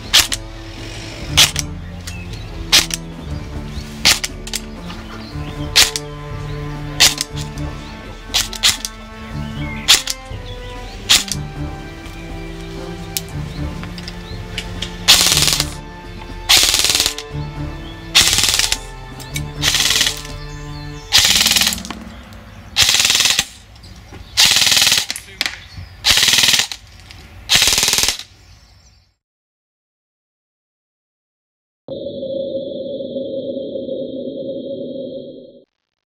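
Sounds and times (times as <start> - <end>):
background music: 0.0 - 23.7
airsoft rifle full-auto bursts: 15.1 - 15.8, 16.5 - 17.2, 18.2 - 18.8, 19.6 - 20.2, 21.1 - 21.8, 22.8 - 23.5, 24.4 - 25.1, 26.1 - 26.8, 27.5 - 28.2.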